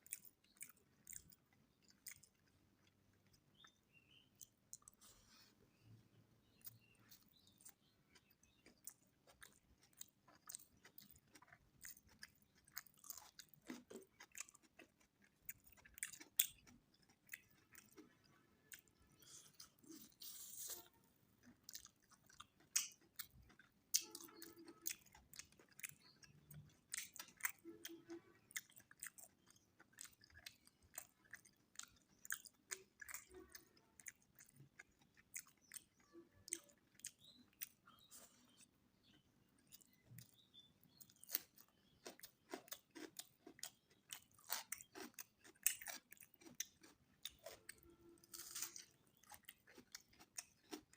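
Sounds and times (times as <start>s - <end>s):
wet chewing mouth clicks: 21.4s - 47.6s.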